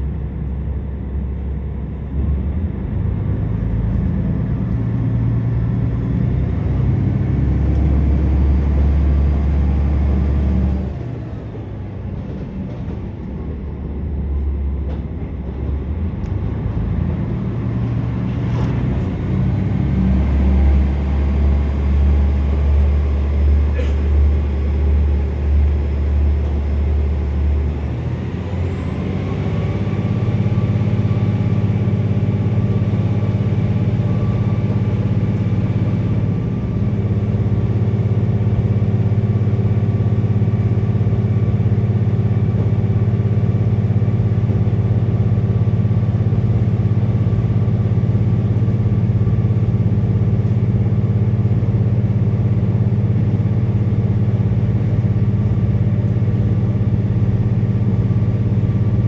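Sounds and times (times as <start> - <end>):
railcar diesel engine: 0.0 - 59.0
clattering running noise: 20.2 - 29.0.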